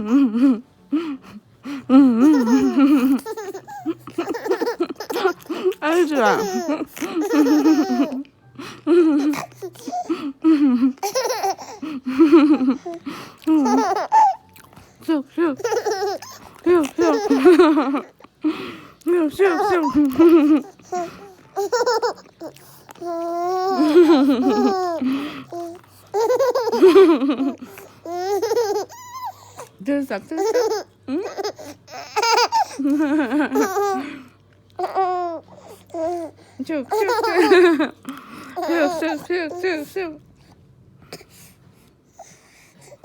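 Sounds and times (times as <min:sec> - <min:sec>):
baby laughing: 0:02.2 - 0:08.3, 0:10.8 - 0:14.5, 0:15.5 - 0:18.2, 0:19.4 - 0:29.6, 0:30.4 - 0:34.1, 0:34.8 - 0:36.3, 0:36.9 - 0:37.9, 0:38.6 - 0:39.2.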